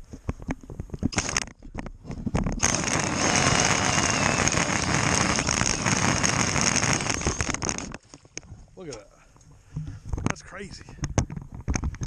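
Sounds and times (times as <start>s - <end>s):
ice auger grinding ice: 2.6s - 8.0s.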